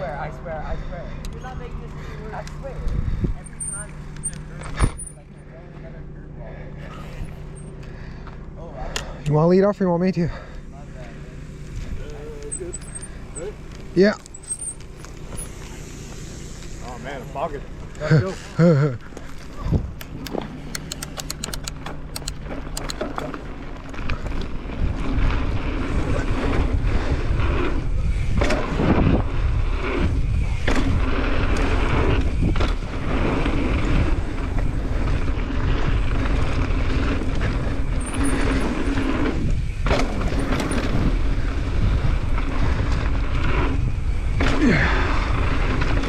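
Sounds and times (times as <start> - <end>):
tyres rumbling on dirt trail: 0.0 - 46.0
wind on camera microphone: 2.8 - 3.5, 19.5 - 20.4, 24.0 - 46.0
quick ticking: 20.0 - 23.2.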